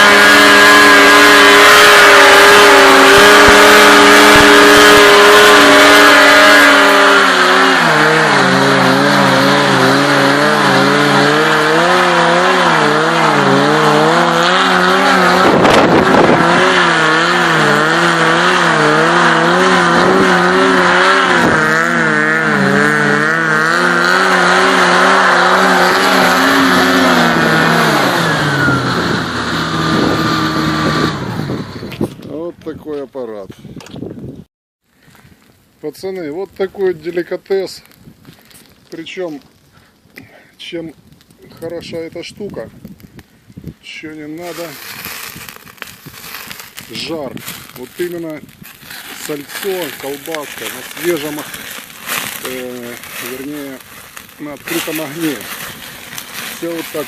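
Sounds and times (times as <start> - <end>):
vehicle engine revving: 0.0 - 32.1, 44.4 - 57.0.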